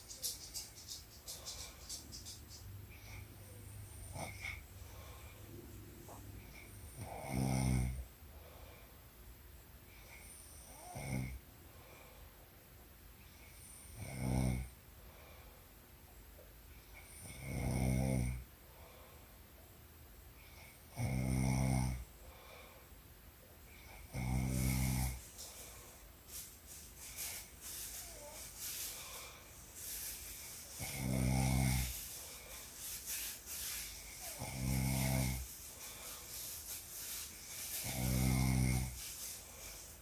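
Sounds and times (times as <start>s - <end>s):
woman snoring: 6.4s - 8.0s, 10.1s - 11.4s, 13.7s - 14.7s, 17.0s - 18.4s, 20.6s - 22.1s, 23.9s - 25.2s, 30.7s - 32.1s, 34.1s - 35.5s, 37.8s - 39.0s.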